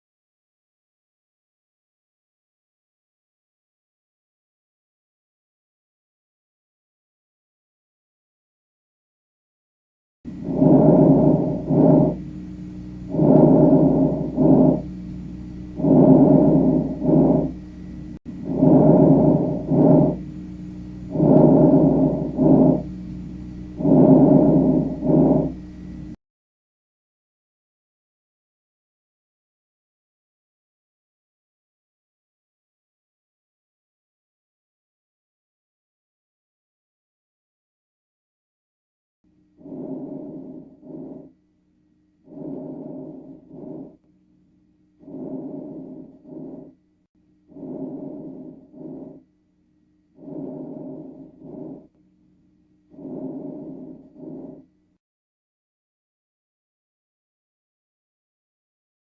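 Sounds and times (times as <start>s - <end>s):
faint steady hum: 10.3s - 26.2s, 39.3s - 55.0s
child breathing: 10.4s - 12.2s, 13.1s - 14.9s, 15.8s - 17.6s, 18.5s - 20.2s, 21.1s - 22.9s, 23.8s - 25.6s, 39.6s - 41.3s, 42.3s - 44.0s, 45.0s - 46.8s, 47.5s - 49.2s, 50.2s - 52.0s, 53.0s - 54.6s.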